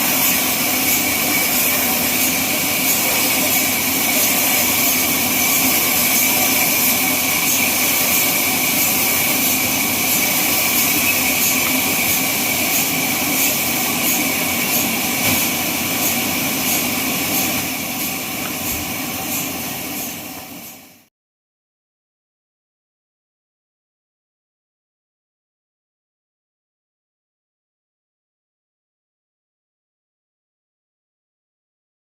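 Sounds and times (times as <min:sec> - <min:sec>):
sawmill machine whine: 0:00.0 - 0:21.0.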